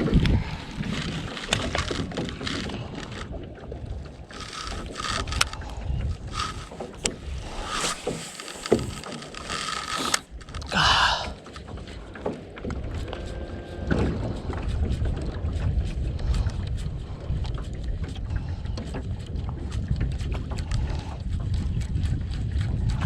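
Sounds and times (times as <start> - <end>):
fishing tackle clicks and knocks: 0.0 - 13.3
wind and water against hull: 0.0 - 23.0.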